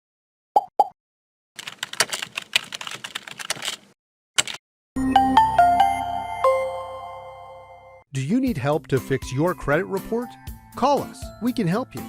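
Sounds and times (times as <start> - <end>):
keyboard typing: 1.6 - 4.6.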